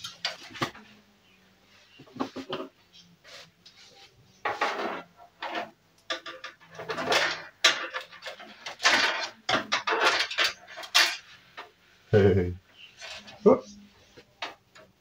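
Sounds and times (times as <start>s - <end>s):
computer parts clattering: 4.5s - 11.3s.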